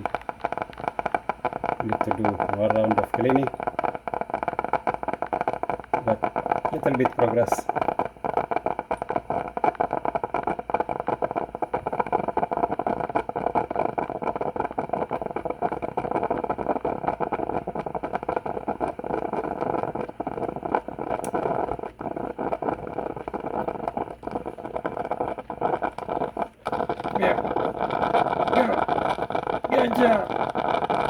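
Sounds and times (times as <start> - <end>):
coffee machine pump fluttering: 0.0 - 31.0.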